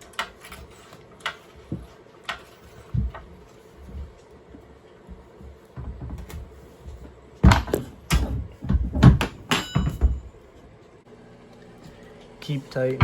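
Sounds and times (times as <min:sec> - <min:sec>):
hand tools knocking on metal: 0:07.4 - 0:10.3.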